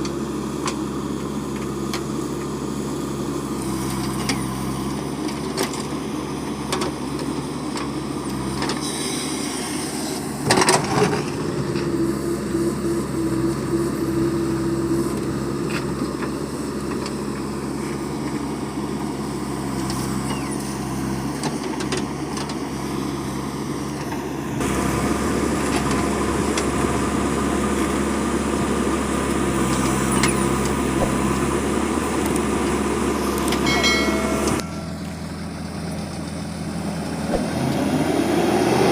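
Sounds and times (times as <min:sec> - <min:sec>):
backhoe diesel engine: 0:00.0 - 0:38.9
short high tones: 0:33.6 - 0:35.3.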